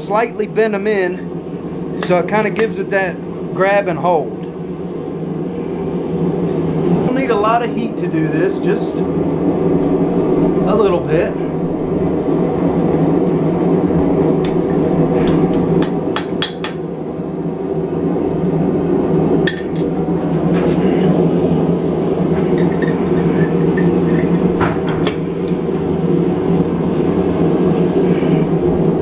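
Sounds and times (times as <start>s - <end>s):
steady low drone: 0.0s - 29.0s
hammer striking anvil: 15.3s - 17.1s, 19.5s - 20.1s.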